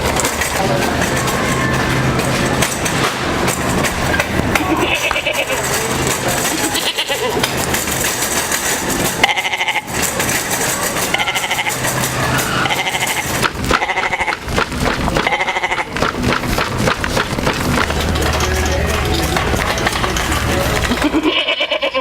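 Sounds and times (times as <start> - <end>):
goat bleating: 4.6 - 5.6, 6.5 - 7.4, 9.2 - 10.0, 11.1 - 14.5, 15.1 - 16.0, 20.9 - 22.0.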